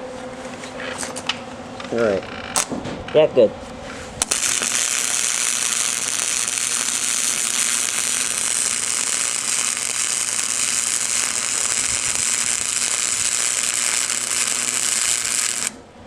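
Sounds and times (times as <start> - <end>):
arc welder crackling hiss: 4.2 - 15.9.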